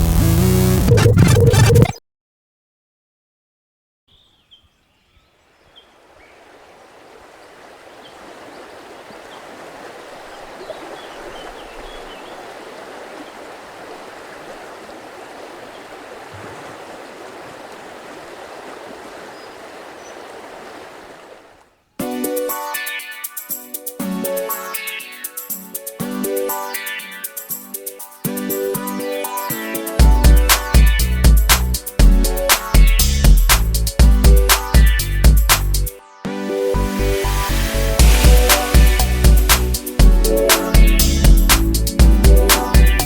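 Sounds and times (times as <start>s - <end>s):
river water rushing: 5.8s - 21.8s
faint bird chirps: 10.2s - 12.6s.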